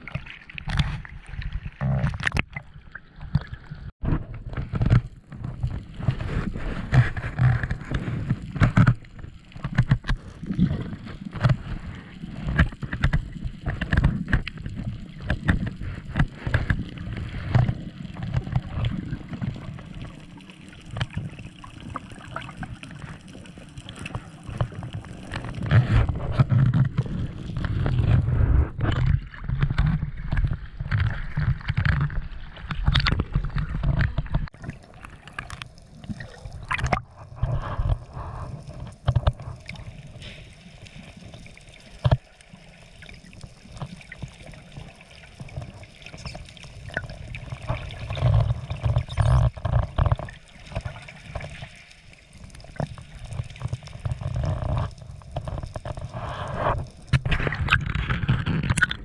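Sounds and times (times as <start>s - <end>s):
low water rumble: 0.0s - 59.0s
water sloshing against camera: 0.0s - 59.0s.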